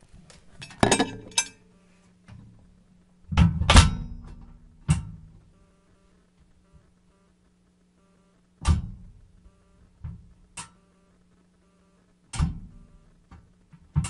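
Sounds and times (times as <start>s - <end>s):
steady low hum: 0.0s - 14.0s
sharp knocks inside oven: 3.3s - 5.3s, 8.6s - 9.0s.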